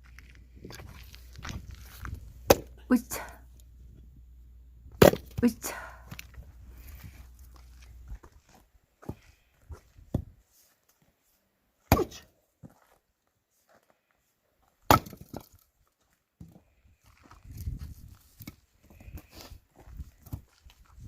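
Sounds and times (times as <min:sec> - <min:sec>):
axe splitting firewood: 0:02.0 - 0:02.9, 0:04.9 - 0:07.8, 0:11.9 - 0:12.3, 0:14.8 - 0:15.7.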